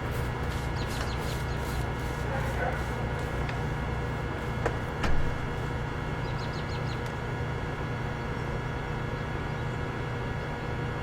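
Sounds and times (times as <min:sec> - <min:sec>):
steady low hum: 0:00.0 - 0:11.0
bird chirping: 0:00.7 - 0:01.8, 0:06.2 - 0:07.1.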